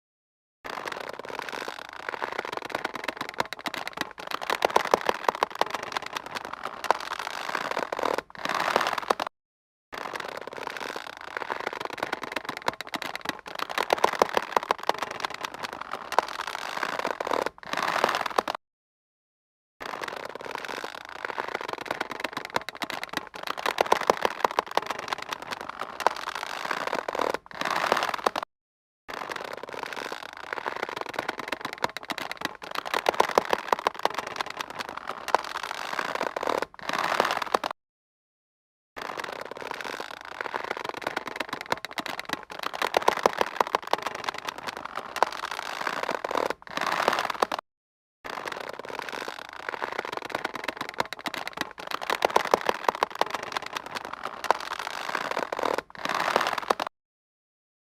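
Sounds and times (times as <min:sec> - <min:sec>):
taut rope creaking: 0:00.7 - 0:09.3, 0:10.0 - 0:18.6, 0:19.8 - 0:28.5, 0:29.1 - 0:37.8, 0:39.0 - 0:47.6, 0:48.3 - 0:56.9.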